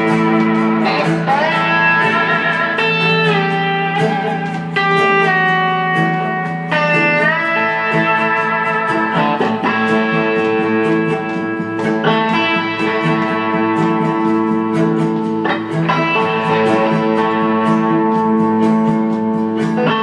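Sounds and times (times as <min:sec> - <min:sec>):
acoustic guitar folk song: 0:00.0 - 0:20.0.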